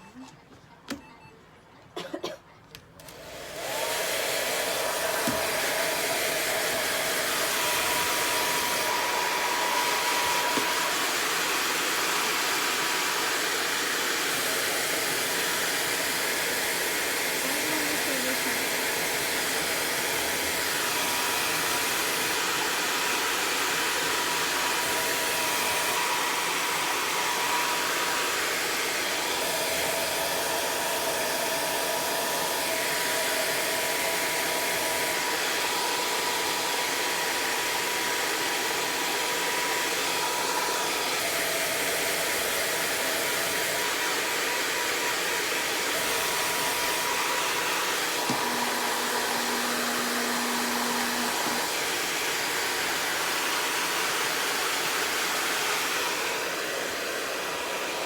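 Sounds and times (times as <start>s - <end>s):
hair dryer blowing: 3.0s - 58.0s
thin motor whine: 45.9s - 52.0s.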